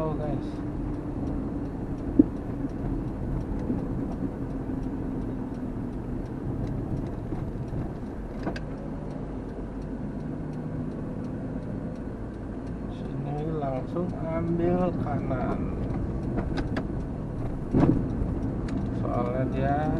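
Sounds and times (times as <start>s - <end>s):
van engine and road hum: 0.0s - 19.9s
sharp click: 15.8s - 19.4s.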